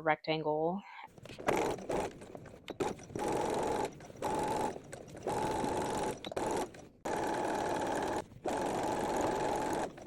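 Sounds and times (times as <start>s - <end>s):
sewing machine stitching: 1.2s - 10.0s.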